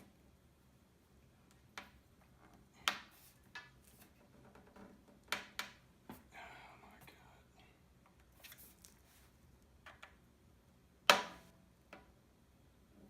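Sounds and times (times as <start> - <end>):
soft rustle: 0.0 - 5.0, 8.2 - 9.7.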